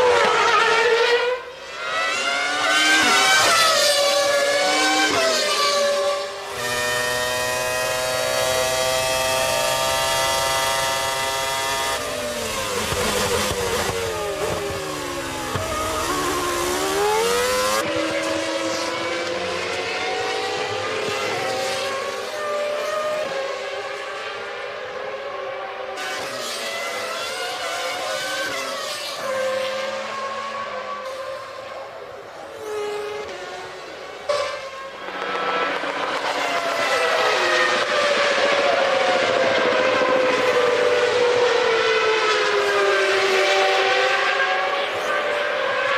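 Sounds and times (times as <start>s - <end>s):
race car engines screaming: 0.0s - 23.8s.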